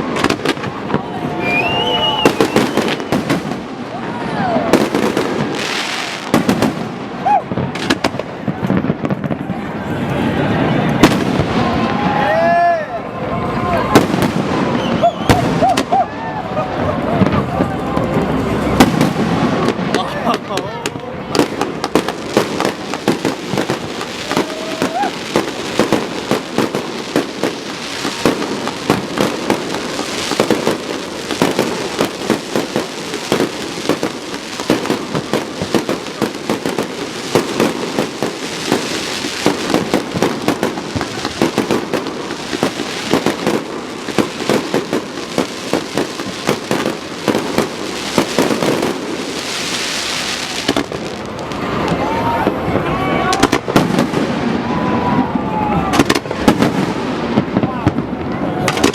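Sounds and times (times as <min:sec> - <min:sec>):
fireworks bangs and pops: 0:00.0 - 0:12.5, 0:13.7 - 0:55.2, 0:55.8 - 0:58.9
crowd voices: 0:00.0 - 0:58.9.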